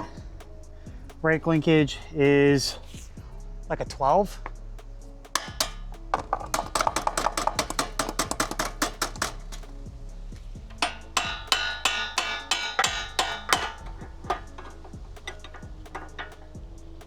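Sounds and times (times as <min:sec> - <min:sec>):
socket ratchet clicking: 0:05.3 - 0:09.9, 0:10.5 - 0:17.0.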